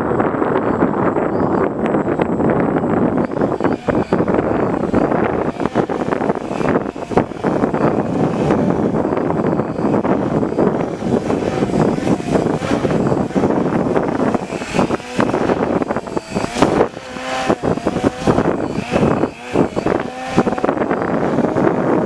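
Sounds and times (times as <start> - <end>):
electric model plane motor whine: 0.0 - 22.0
wind buffeting microphone: 0.0 - 22.0.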